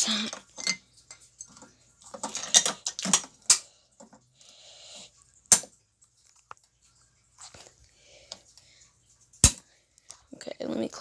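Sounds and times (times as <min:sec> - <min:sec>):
plastic pieces clicking and clattering: 0:00.0 - 0:03.7.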